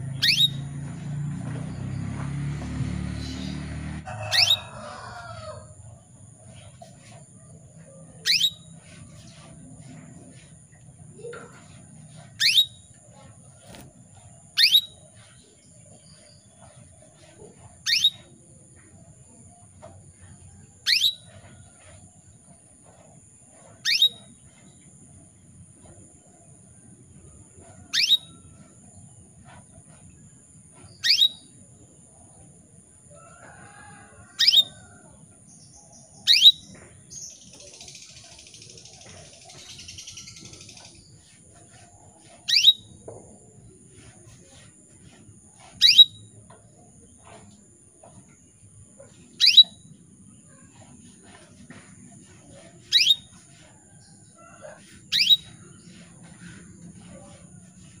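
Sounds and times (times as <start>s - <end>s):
canary chirp sweeping down: 0.2s - 0.7s, 12.4s - 12.7s, 31.0s - 31.4s.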